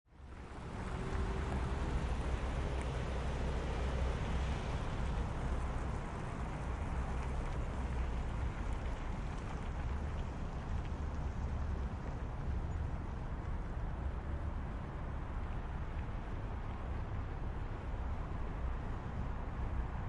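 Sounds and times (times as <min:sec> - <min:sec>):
traffic low rumble: 0:00.1 - 0:20.0
traffic hiss: 0:00.3 - 0:11.2.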